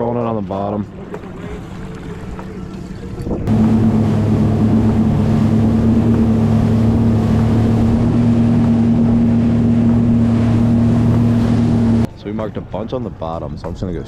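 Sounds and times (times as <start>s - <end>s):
motorboat engine running: 0.8s - 12.1s
rushing water: 0.9s - 12.1s
wind on microphone: 3.1s - 12.1s.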